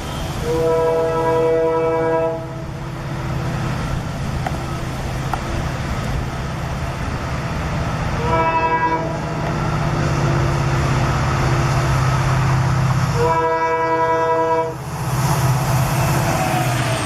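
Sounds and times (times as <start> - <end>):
rumble of moving train: 0.0 - 17.0
train horn blasts: 0.1 - 2.9, 8.2 - 9.6, 13.1 - 14.8.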